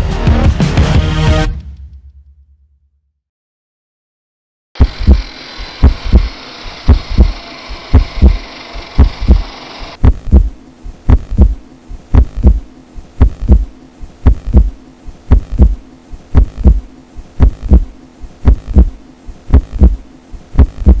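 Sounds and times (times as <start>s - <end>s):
low heartbeat-like double thumps: 4.8s - 8.4s, 9.0s - 21.0s
faint low hum: 10.0s - 21.0s.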